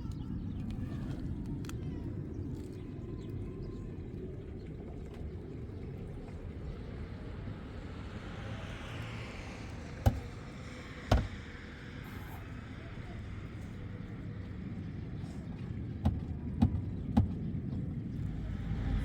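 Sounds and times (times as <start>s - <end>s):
steady low rumble: 12.6s - 19.0s.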